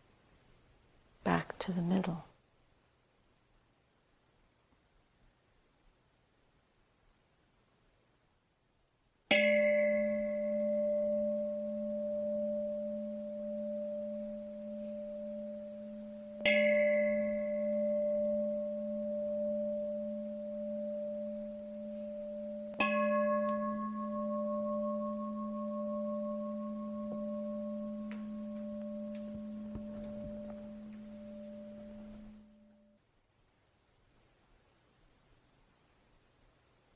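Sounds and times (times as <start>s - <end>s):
meditation bell ringing: 9.3s - 33.0s.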